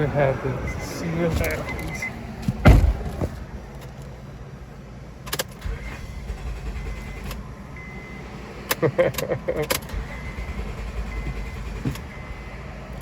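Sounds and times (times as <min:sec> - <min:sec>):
car engine rumbling: 0:00.0 - 0:13.0
loud low thump: 0:02.5 - 0:03.4.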